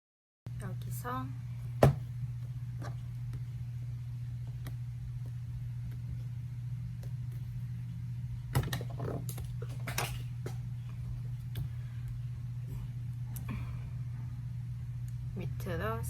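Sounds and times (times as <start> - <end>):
steady low hum: 0.5 - 16.0.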